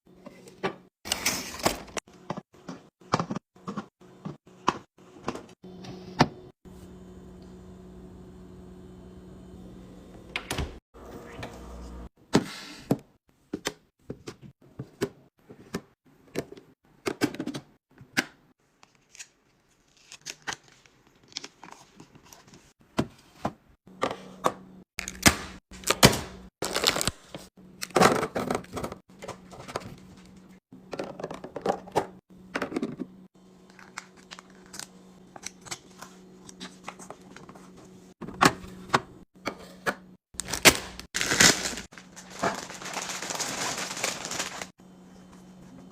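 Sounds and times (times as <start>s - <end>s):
plastic containers clicking and rustling: 30.9s - 33.1s.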